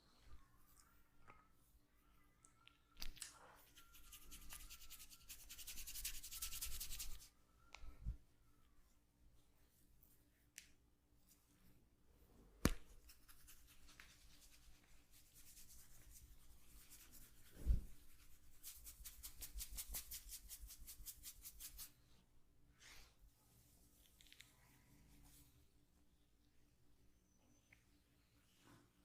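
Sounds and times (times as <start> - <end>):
hands rubbing skin: 3.6 - 7.3, 12.6 - 21.9.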